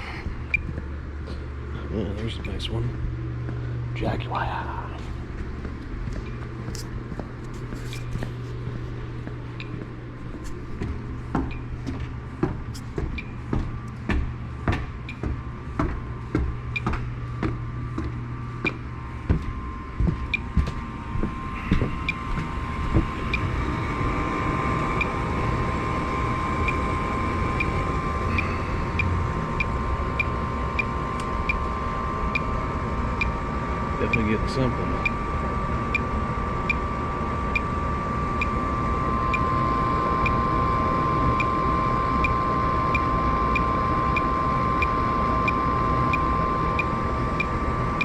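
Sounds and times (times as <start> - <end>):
low hum: 0.0 - 48.0
steady mechanical whine: 0.0 - 48.0
footsteps: 4.9 - 23.6.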